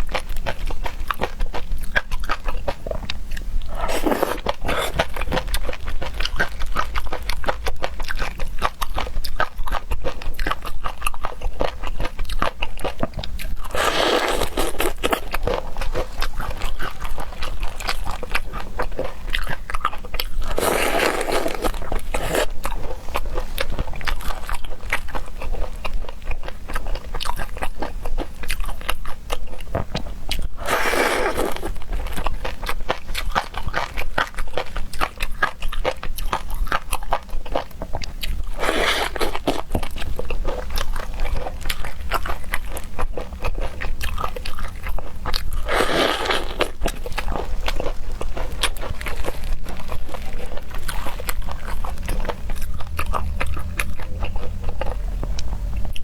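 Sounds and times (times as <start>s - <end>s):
person chewing and crunching food: 0.0s - 56.0s.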